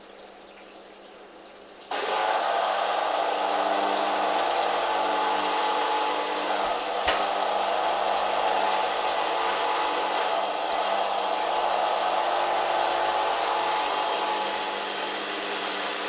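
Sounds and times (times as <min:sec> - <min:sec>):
washing machine spinning: 0:01.2 - 0:16.0
sharp click: 0:07.0 - 0:07.3.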